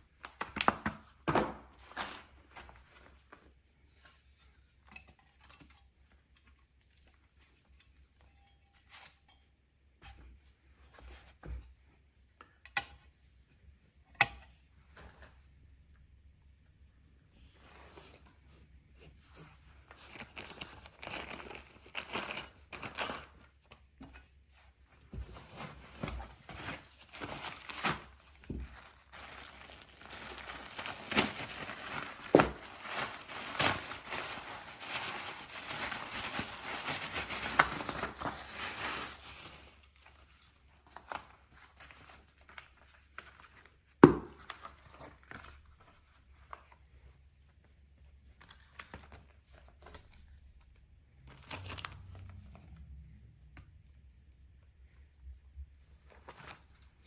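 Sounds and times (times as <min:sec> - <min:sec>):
plastic wrap crinkling and tearing: 0:20.1 - 0:23.0, 0:25.5 - 0:43.8.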